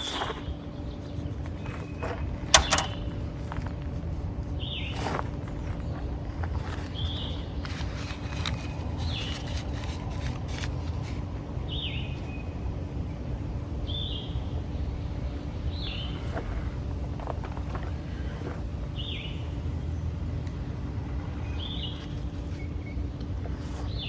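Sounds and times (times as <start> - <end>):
steady low rumble: 0.0 - 24.0
sharp crackling clicks: 2.5 - 3.1.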